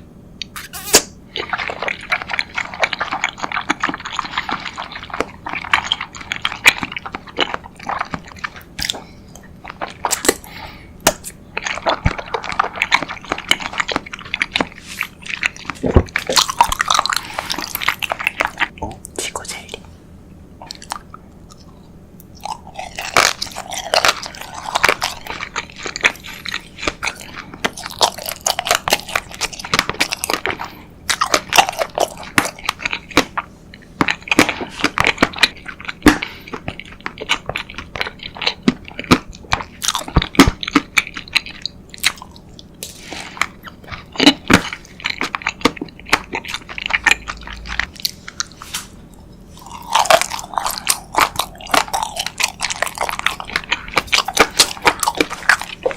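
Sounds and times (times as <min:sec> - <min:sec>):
wet mouth clicks: 0:00.4 - 0:01.1
crunchy biting and chewing: 0:00.4 - 0:19.8, 0:20.6 - 0:55.9.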